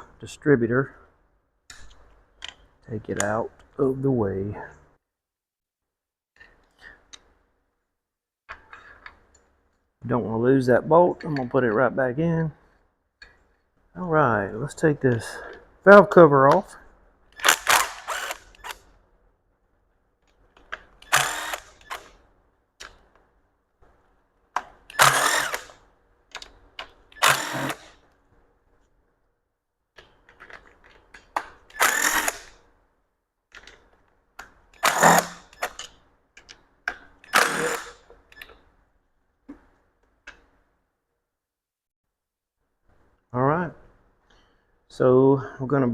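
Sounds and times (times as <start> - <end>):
cordless power tool whirring: 17.4 - 18.9, 21.0 - 22.2, 24.9 - 25.8, 27.2 - 28.0, 31.7 - 32.5, 34.8 - 35.8, 37.3 - 38.1.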